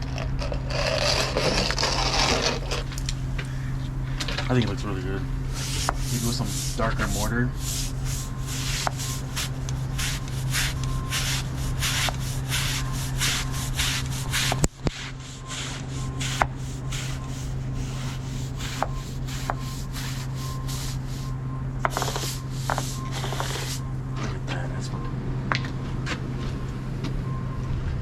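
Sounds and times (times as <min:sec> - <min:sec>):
steady low hum: 0:00.0 - 0:28.0
stiff brush scrubbing brick: 0:00.3 - 0:03.6, 0:05.5 - 0:23.9.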